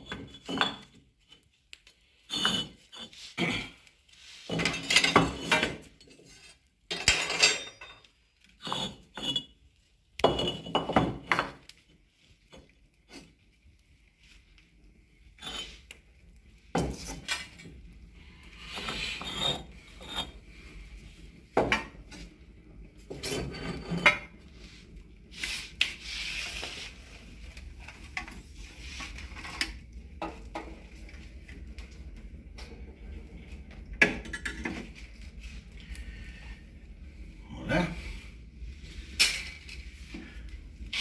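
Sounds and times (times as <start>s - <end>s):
metal parts scraping and clinking: 4.3s - 9.5s.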